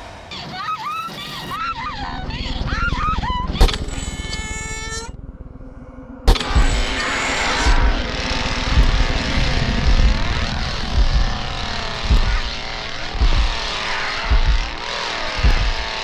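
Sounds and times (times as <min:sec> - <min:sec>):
heavy low booms: 0:05.1 - 0:16.0
chainsaw engine revving: 0:07.6 - 0:16.0.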